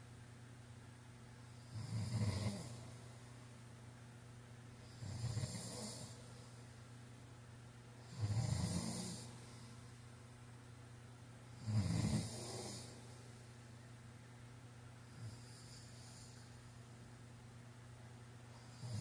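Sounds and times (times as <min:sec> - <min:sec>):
steady low hum: 0:00.0 - 0:19.0
man snoring: 0:01.6 - 0:02.8, 0:04.9 - 0:06.2, 0:08.0 - 0:09.4, 0:11.6 - 0:13.0, 0:18.6 - 0:19.0.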